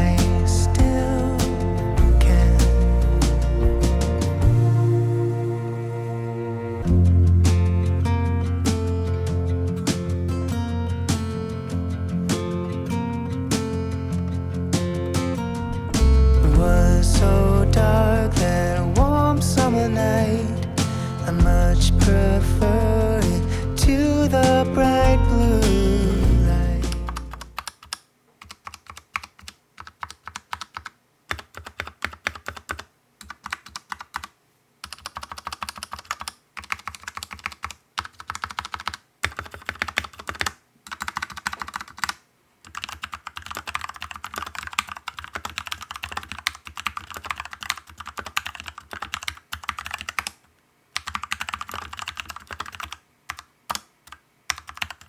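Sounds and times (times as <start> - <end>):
background music: 0.0 - 27.6
mechanical keyboard typing: 26.8 - 50.4, 51.0 - 55.0.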